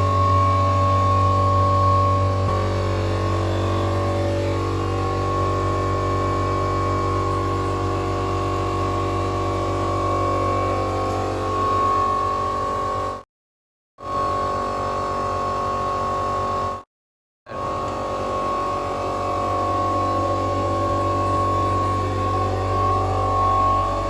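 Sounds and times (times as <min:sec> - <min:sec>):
loud multi-tone siren: 0:00.0 - 0:07.6, 0:18.9 - 0:24.0.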